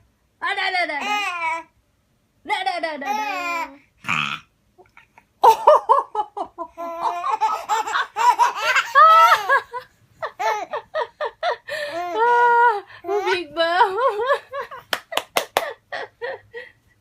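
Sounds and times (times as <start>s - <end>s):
baby laughing: 6.6s - 12.5s.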